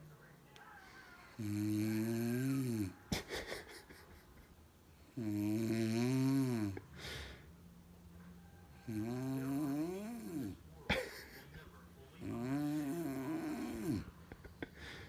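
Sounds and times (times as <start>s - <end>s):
person snoring: 1.3s - 3.0s, 5.2s - 6.8s, 8.9s - 10.6s, 12.2s - 14.1s.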